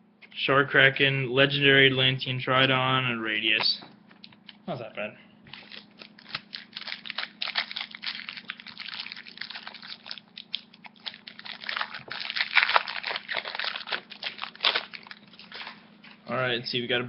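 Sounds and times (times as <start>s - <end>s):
foil wrapper tearing and crinkling: 5.5s - 15.8s.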